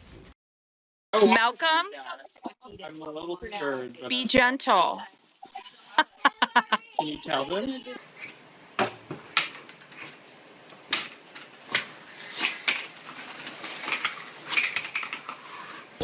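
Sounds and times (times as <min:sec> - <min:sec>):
clicks and clatters of hard objects: 0:09.3 - 0:16.0.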